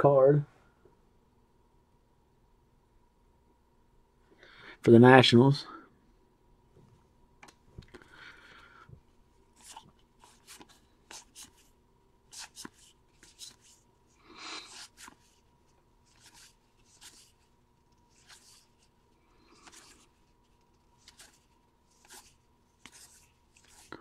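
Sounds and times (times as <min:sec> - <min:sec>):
trading cards being flipped: 0:09.6 - 0:11.7, 0:12.3 - 0:13.8, 0:14.6 - 0:15.4, 0:16.0 - 0:24.0.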